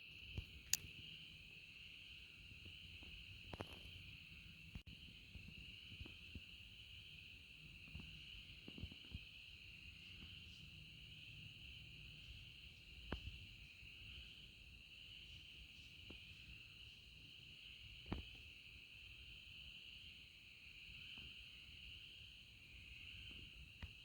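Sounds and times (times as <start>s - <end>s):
high-pitched insect chorus: 0.0s - 24.0s
faint clicks: 0.3s - 1.0s.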